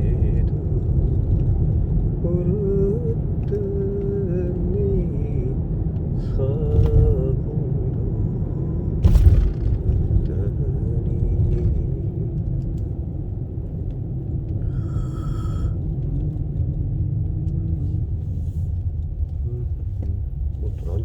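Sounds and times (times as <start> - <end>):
car road rumble: 0.0 - 21.0
sharp knock: 9.0 - 9.9.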